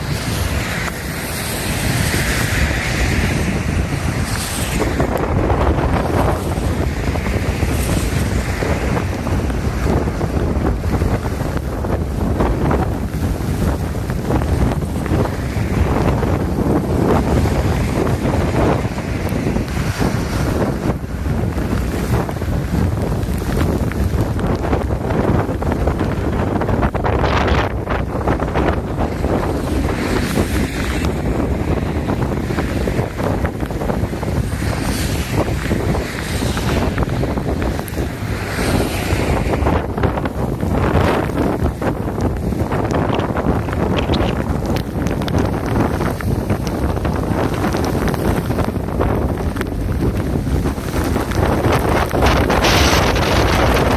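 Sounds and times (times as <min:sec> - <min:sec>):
floodwater rushing: 0:00.0 - 0:53.9
wind buffeting microphone: 0:00.0 - 0:53.9.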